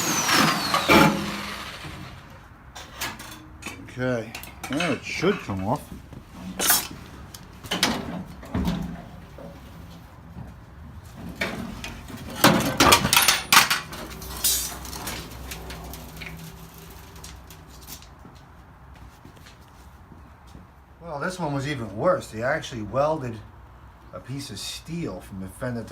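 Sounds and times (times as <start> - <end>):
metal fender clanking and scraping: 0.4 - 10.1, 11.0 - 17.3.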